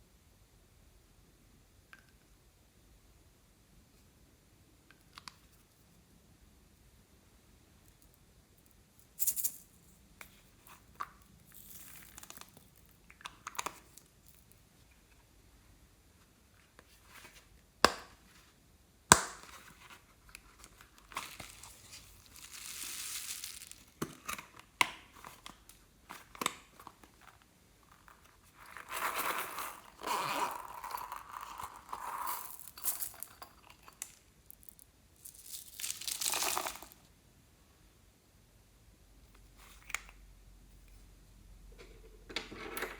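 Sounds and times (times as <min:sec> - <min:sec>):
slime crinkling and tearing: 0:21.2 - 0:24.0.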